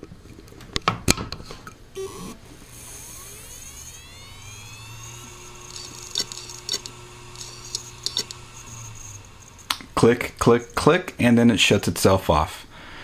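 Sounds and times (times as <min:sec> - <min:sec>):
hard drive spinning up whine: 0:02.0 - 0:10.8
hard drive heads clicking: 0:02.8 - 0:10.8.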